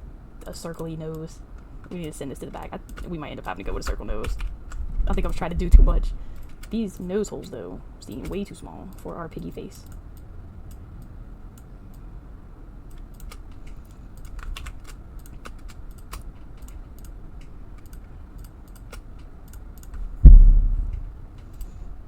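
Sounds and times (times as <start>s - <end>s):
dull low thump: 4.8s - 6.2s, 20.2s - 21.2s
keyboard and mouse clicks: 12.9s - 21.7s.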